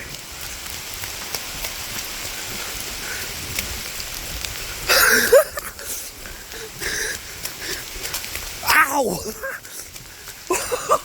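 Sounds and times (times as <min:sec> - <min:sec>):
raindrops ticking: 0:00.0 - 0:11.0
torrential rain hissing: 0:00.0 - 0:11.0
person crying out: 0:04.9 - 0:05.8, 0:08.6 - 0:09.7.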